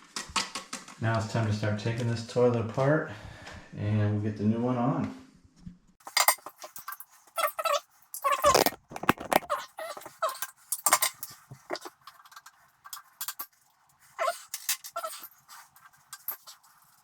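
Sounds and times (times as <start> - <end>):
objects clicking and clinking: 8.2 - 13.7.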